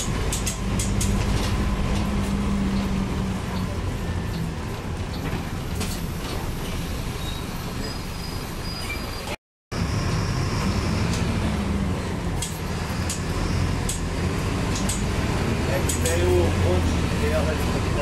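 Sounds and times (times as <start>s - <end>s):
rattles and clicks from bus body: 0.0s - 7.0s, 11.9s - 18.0s
bus engine and road rumble: 0.0s - 18.0s.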